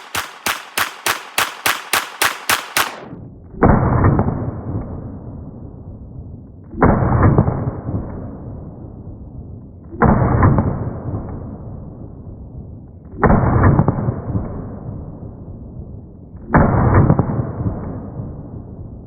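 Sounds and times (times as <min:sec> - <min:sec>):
pistol firing rapid shots: 0:00.0 - 0:03.2.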